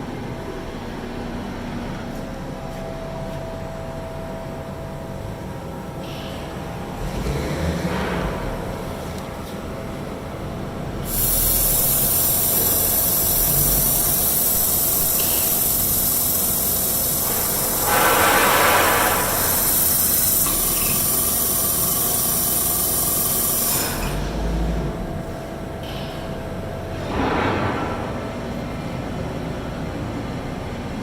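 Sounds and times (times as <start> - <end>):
loud hiss: 11.0 - 24.3
drilling machine tone: 11.1 - 24.3.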